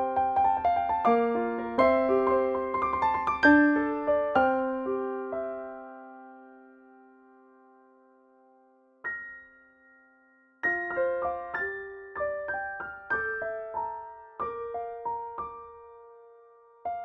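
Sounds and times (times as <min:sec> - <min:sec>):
soft electric piano melody: 0:00.0 - 0:17.0.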